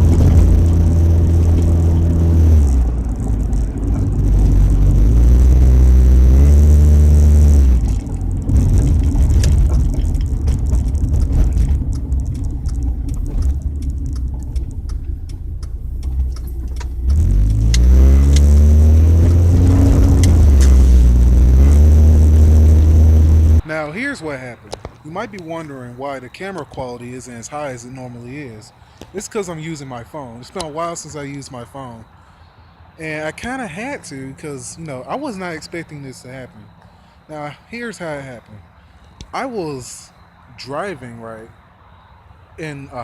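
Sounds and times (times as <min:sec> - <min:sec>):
car engine with leaking exhaust: 0:00.0 - 0:23.6.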